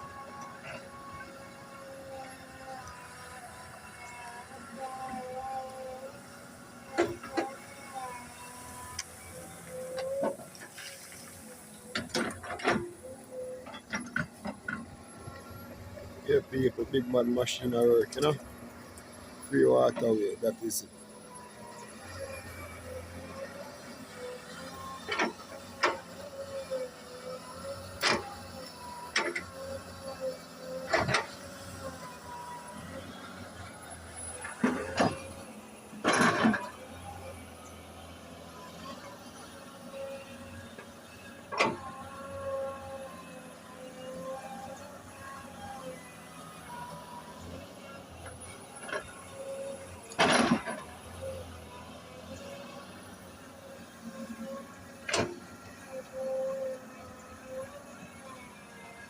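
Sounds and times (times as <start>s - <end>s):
excavator engine running: 0.2s - 58.0s
excavator metallic clanks: 11.8s - 15.1s, 27.5s - 31.6s, 34.3s - 37.2s, 48.3s - 51.5s.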